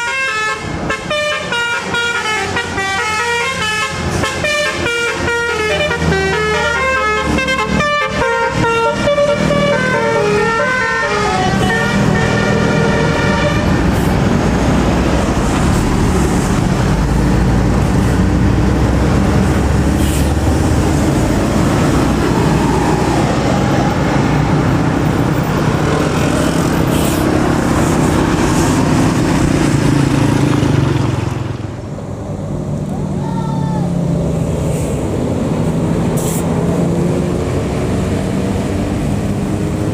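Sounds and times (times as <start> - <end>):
musical bus horn: 0.0 - 14.0
bus engine and tyre noise: 0.0 - 39.9.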